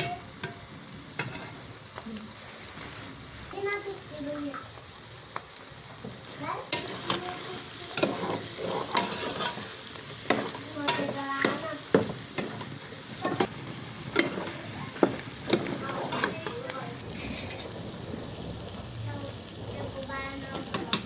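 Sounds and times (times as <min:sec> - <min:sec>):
food sizzling in a pan: 0:00.0 - 0:21.0
utensil scraping a pan: 0:06.7 - 0:18.2.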